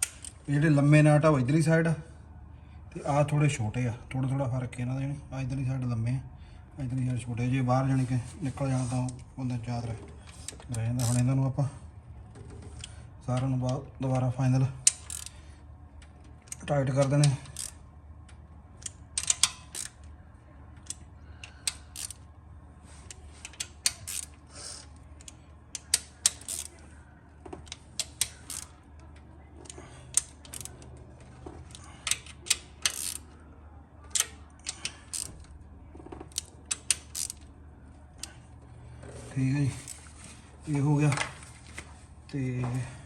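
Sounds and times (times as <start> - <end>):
socket ratchet clicking: 14.9 - 15.4, 17.4 - 17.8, 18.8 - 20.0, 20.8 - 22.2, 23.4 - 24.4, 25.2 - 26.7, 27.6 - 28.8, 30.1 - 30.8, 31.8 - 33.3, 34.1 - 35.4, 36.3 - 37.5.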